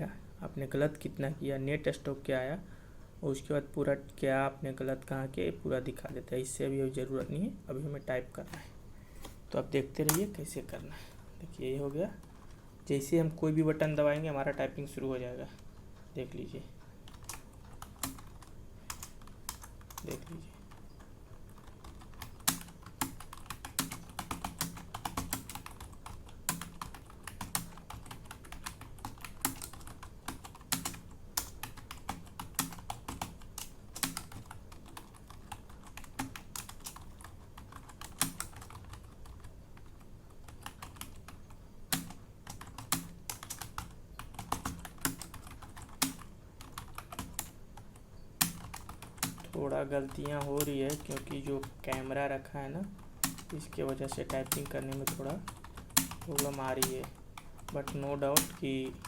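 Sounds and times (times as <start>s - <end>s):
fast keyboard typing: 17.1s - 59.0s.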